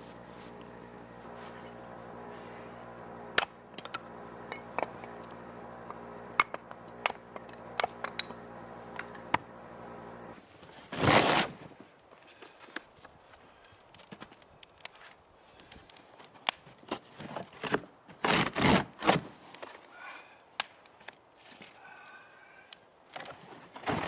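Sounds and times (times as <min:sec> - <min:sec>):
steady mechanical hum: 0:00.0 - 0:10.5.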